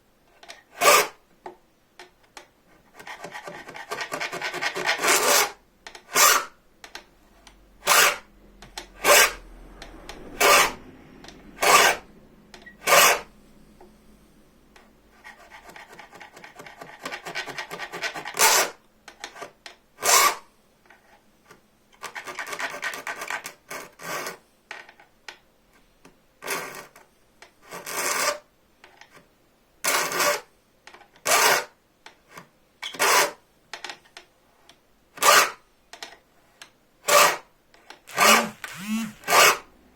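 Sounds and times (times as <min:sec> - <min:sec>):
hand file rasping on saw blade: 0:03.0 - 0:06.5, 0:07.8 - 0:08.3, 0:08.9 - 0:09.4, 0:10.2 - 0:10.8, 0:11.6 - 0:12.1, 0:12.7 - 0:13.3, 0:35.2 - 0:35.6, 0:38.1 - 0:39.7
rapid file scraping: 0:03.0 - 0:06.5, 0:07.8 - 0:09.4, 0:10.0 - 0:10.8, 0:11.6 - 0:13.3, 0:38.1 - 0:39.7.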